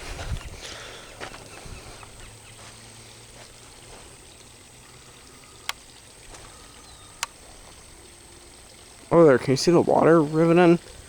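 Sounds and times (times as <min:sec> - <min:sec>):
faint water sounds: 0:00.0 - 0:11.0
soft ticks: 0:05.5 - 0:07.4.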